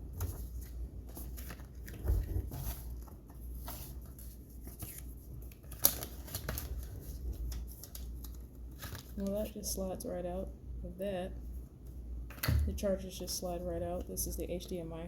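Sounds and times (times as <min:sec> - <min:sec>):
cardboard packaging rustling: 0:00.2 - 0:09.3.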